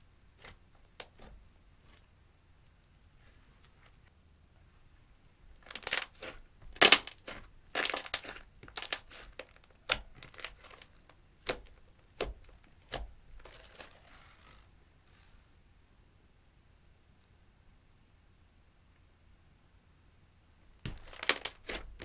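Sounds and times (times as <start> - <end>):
hands squishing slime: 5.6 - 14.6, 20.8 - 22.0.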